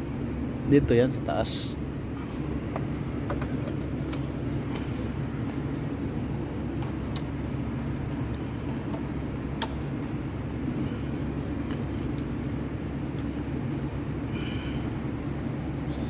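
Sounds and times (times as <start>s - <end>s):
low rumble with hum: 0.0s - 16.0s.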